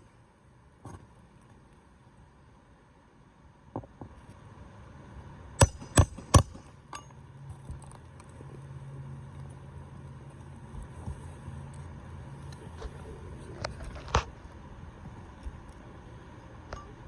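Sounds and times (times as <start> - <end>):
low steady hum: 0.0 - 17.0
hammer striking: 5.6 - 7.2.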